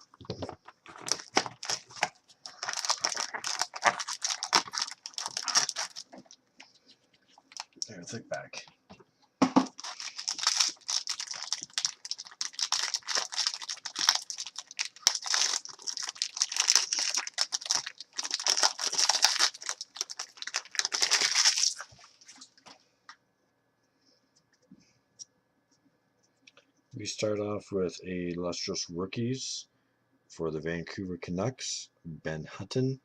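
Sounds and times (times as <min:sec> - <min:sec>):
wrapper tearing and crinkling: 0:00.9 - 0:06.4, 0:07.5 - 0:07.8, 0:09.6 - 0:22.0.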